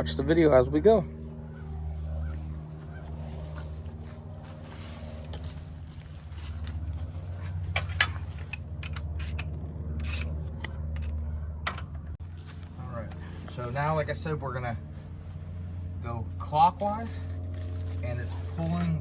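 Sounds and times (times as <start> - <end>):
low engine hum: 0.0 - 19.0
wrench scraping on metal: 7.7 - 11.2.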